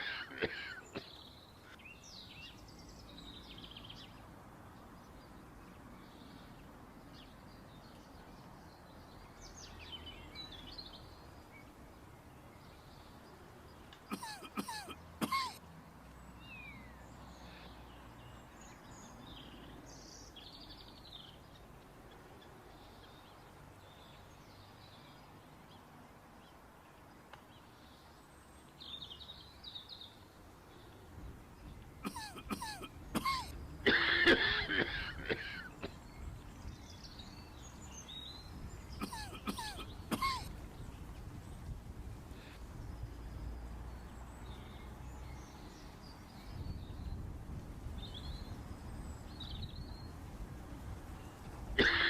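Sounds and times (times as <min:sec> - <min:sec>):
person coughing: 0:00.0 - 0:01.1, 0:14.1 - 0:15.6, 0:32.0 - 0:35.7, 0:39.0 - 0:40.5, 0:51.8 - 0:52.0
bird chirps: 0:31.7 - 0:40.5.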